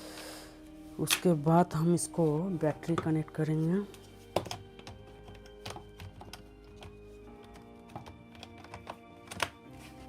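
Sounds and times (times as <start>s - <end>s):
soft background music: 0.0s - 10.0s
laptop parts clicking: 4.4s - 9.6s.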